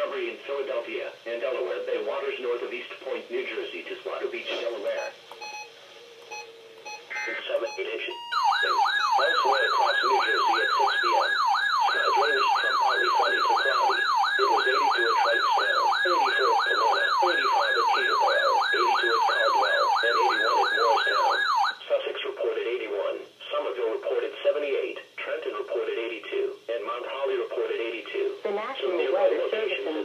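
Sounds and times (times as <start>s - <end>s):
electronic siren alarm tone: 5.0s - 21.8s.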